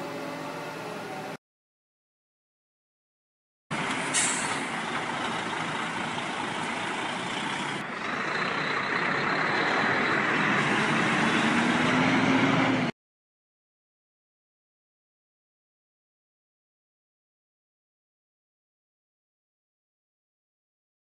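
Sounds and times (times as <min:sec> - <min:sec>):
heavy diesel engine running: 0:03.7 - 0:12.9.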